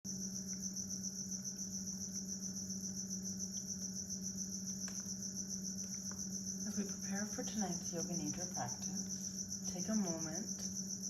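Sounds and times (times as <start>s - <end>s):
crickets chirping: 0.1s - 11.0s
steady low hum: 0.1s - 11.0s.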